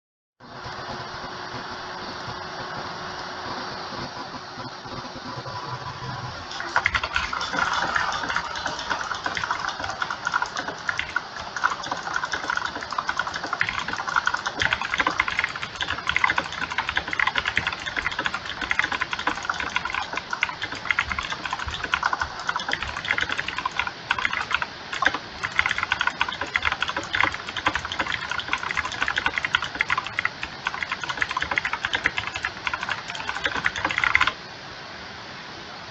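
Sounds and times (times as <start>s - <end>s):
mechanical keyboard typing: 6.5s - 34.4s.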